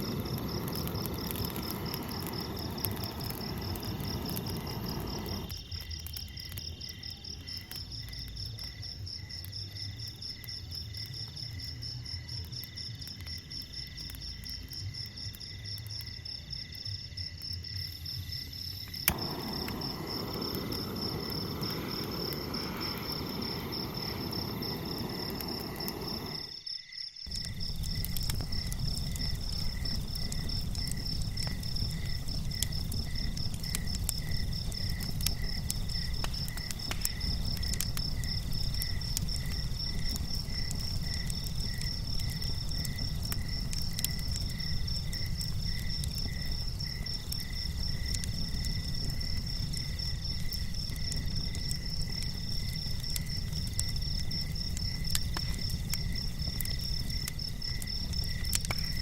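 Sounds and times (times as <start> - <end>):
steady low rumble: 0.0 - 5.5, 19.0 - 26.5, 27.3 - 46.8
insect middle trill bursts: 0.0 - 6.0, 17.9 - 50.9
insect lower chirp: 0.0 - 59.0.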